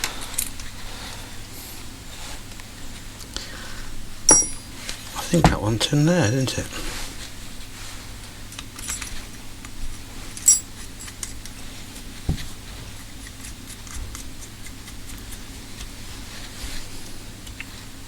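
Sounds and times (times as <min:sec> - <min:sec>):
steady low hum: 0:00.0 - 0:18.0
metal parts clinking: 0:04.3 - 0:04.7, 0:10.4 - 0:10.7.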